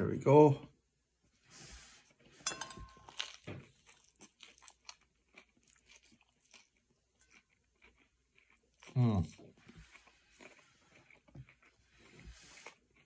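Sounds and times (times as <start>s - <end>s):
person chewing crunchy food: 2.8s - 13.0s.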